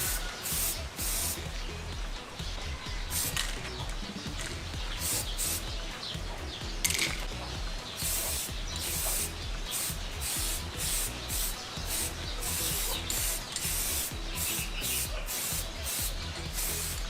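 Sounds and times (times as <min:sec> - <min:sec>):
spray paint hissing: 0:00.0 - 0:01.6, 0:03.1 - 0:03.6, 0:04.3 - 0:05.7, 0:07.9 - 0:17.0
electronic music with bass beat: 0:00.0 - 0:17.0.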